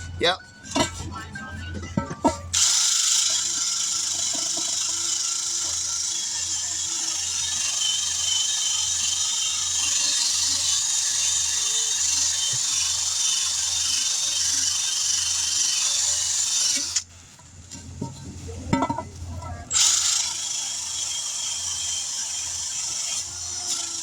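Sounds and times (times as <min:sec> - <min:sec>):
power tool grinding rubber: 0:02.2 - 0:17.1, 0:19.7 - 0:24.0.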